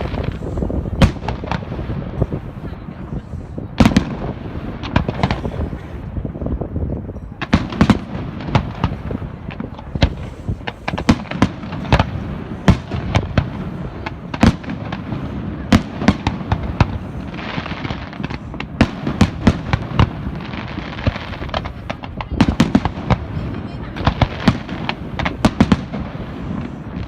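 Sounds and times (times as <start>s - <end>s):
crackling hiss: 0.0s - 27.0s
fireworks bangs and booms: 0.0s - 27.0s.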